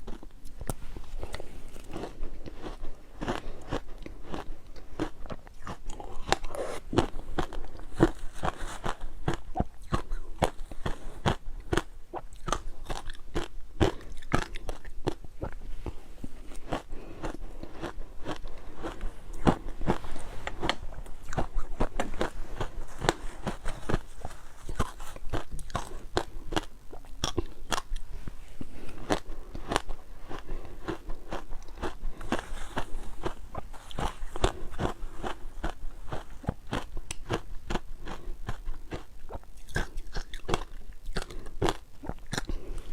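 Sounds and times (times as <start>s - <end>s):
ice crunching between teeth: 0.0s - 42.9s.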